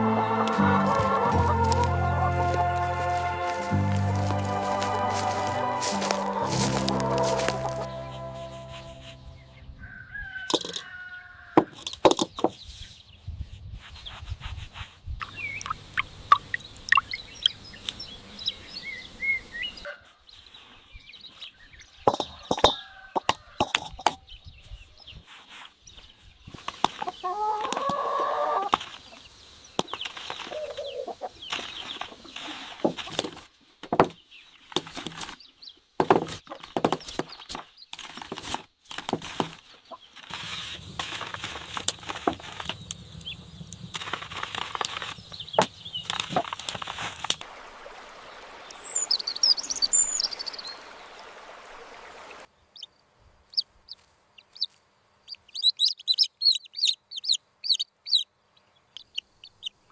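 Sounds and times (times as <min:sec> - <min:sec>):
chickens clucking and calling: 0:00.0 - 0:12.2, 0:22.0 - 0:24.2, 0:26.8 - 0:29.3, 0:30.1 - 0:32.5.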